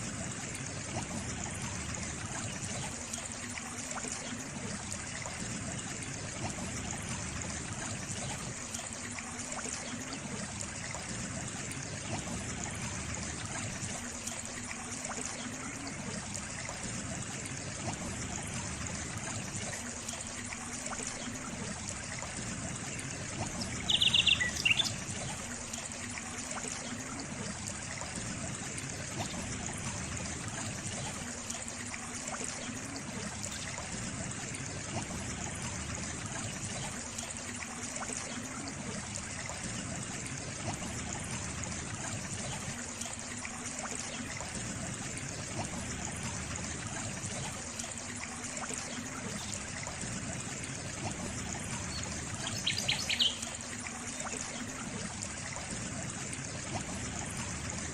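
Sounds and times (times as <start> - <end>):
water trickling: 0.0 - 57.9
bird call: 23.8 - 25.0, 52.5 - 53.5.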